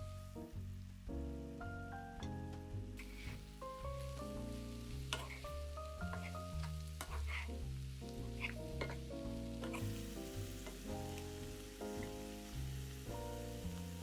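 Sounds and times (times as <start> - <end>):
background music with bass line: 0.0 - 14.0
food sizzling in a pan: 3.0 - 14.0
utensil stirring clicks and scrapes: 5.1 - 7.6, 8.3 - 9.0, 9.6 - 9.8.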